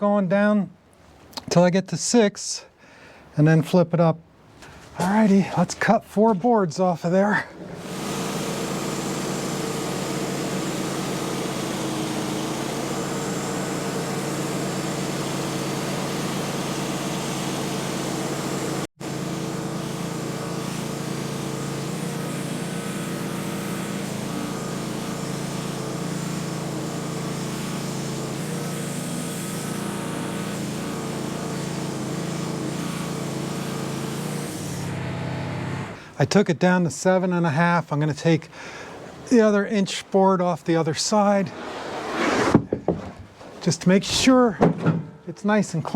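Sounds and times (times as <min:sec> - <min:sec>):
sawmill engine running: 0:07.1 - 0:36.5
saw cutting log: 0:07.6 - 0:36.1, 0:41.1 - 0:44.4.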